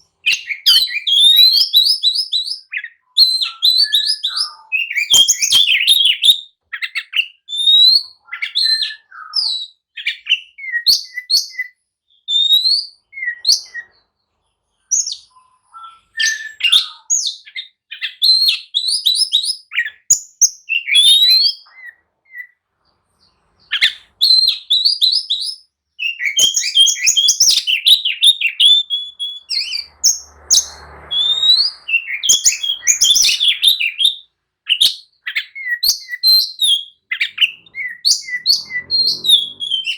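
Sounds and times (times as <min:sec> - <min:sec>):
bird singing sharp chirps: 0:00.0 - 0:14.1, 0:23.1 - 0:39.9.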